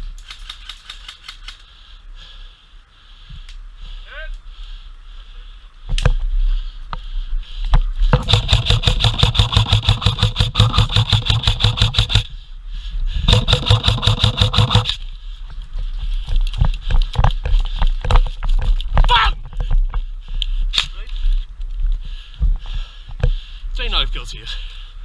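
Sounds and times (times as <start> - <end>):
airsoft gun full-auto bursts: 8.2 - 12.3, 13.3 - 15.0.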